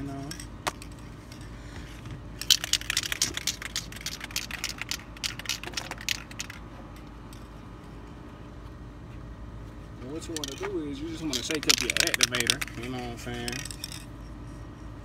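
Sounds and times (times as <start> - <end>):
aerosol can rattling when shaken: 2.4 - 6.7, 10.4 - 14.2.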